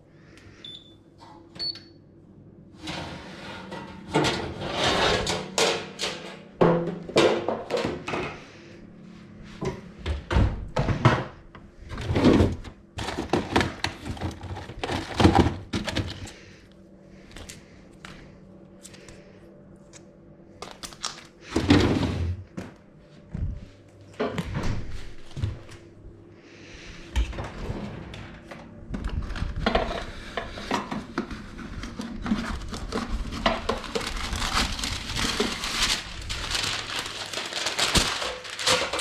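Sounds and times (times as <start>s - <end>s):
kitchen items clattering: 2.9s - 8.4s, 10.1s - 16.4s, 29.2s - 39.0s
faint steady hum: 8.0s - 39.0s.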